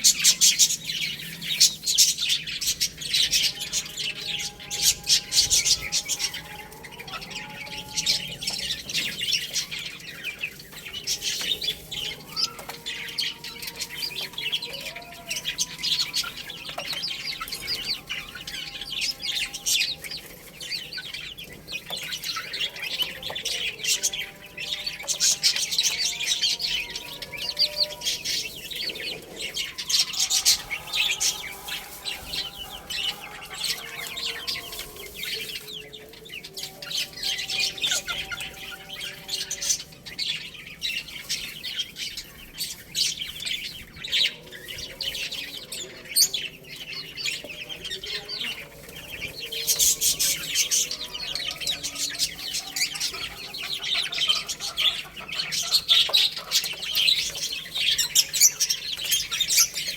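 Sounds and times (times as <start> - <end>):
baby chicks peeping: 0.0 - 59.9
clucking calls: 47.3 - 59.9.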